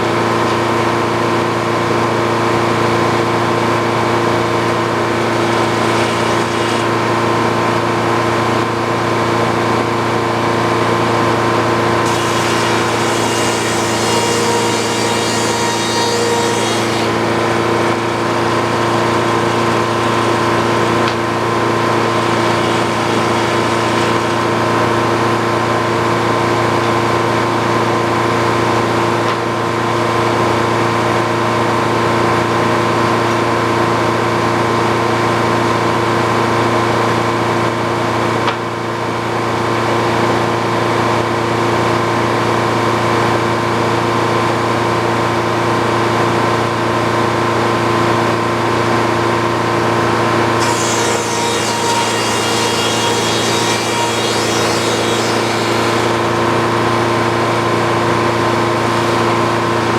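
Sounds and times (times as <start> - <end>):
sawmill humming and whining: 0.0 - 59.9
saw cutting into wood: 4.4 - 8.7, 11.4 - 26.4, 49.7 - 59.9.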